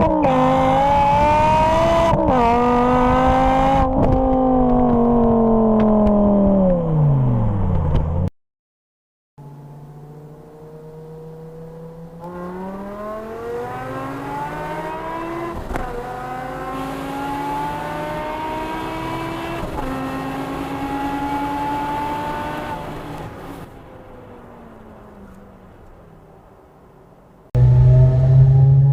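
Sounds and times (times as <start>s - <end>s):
car exhaust accelerating hard: 27.6s - 28.9s.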